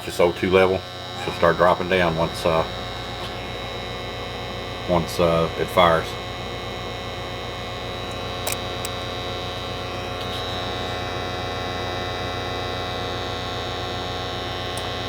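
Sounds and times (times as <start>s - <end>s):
furnace motor hum: 0.0s - 15.0s
thin high whine: 0.0s - 15.0s
short clicks: 8.4s - 9.0s.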